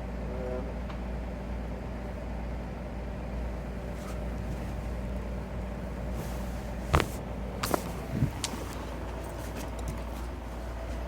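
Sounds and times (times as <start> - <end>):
car interior engine hum: 3.4 - 11.0.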